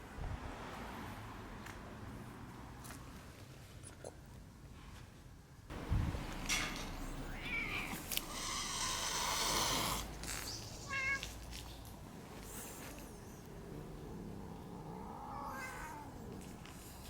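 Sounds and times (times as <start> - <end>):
cat hissing: 6.8 - 11.4
cat meowing: 6.8 - 11.4, 14.3 - 16.6.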